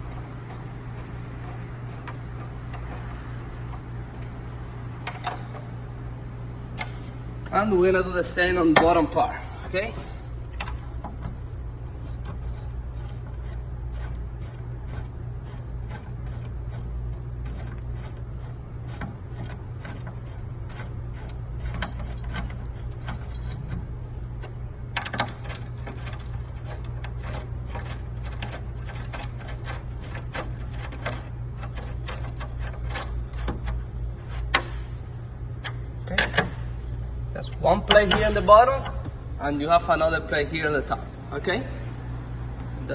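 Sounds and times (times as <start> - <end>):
steady low hum: 0.0 - 42.9.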